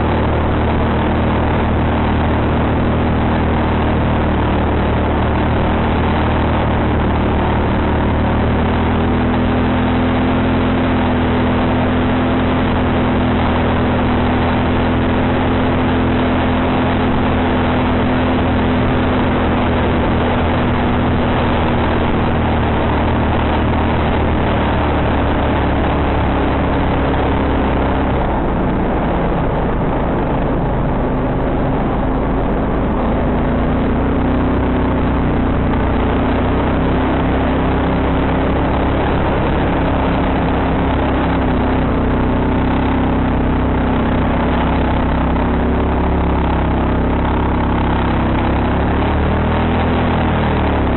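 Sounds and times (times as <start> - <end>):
quad bike engine running: 0.0 - 50.9.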